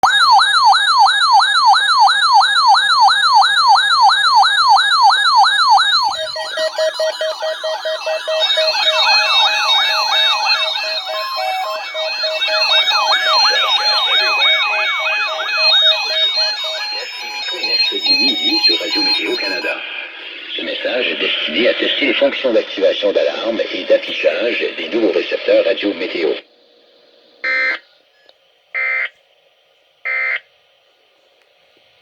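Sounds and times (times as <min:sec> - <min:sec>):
siren wail rising and falling: 0:00.0 - 0:19.7
repeated alarm beeps: 0:00.0 - 0:19.8, 0:27.4 - 0:27.8, 0:28.8 - 0:29.1, 0:30.1 - 0:30.4.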